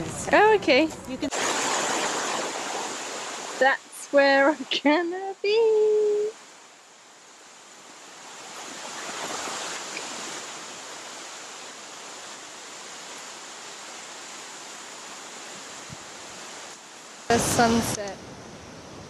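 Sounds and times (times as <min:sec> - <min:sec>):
steady rushing noise: 0:06.4 - 0:19.0.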